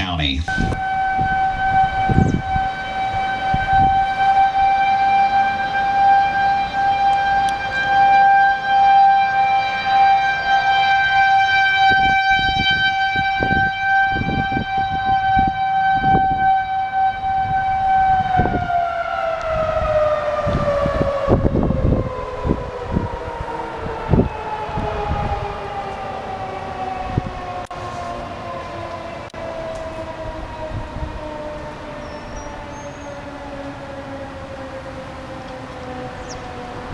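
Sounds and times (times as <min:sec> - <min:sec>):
low thumps: 0:00.0 - 0:08.0
tornado warning siren: 0:00.0 - 0:36.9.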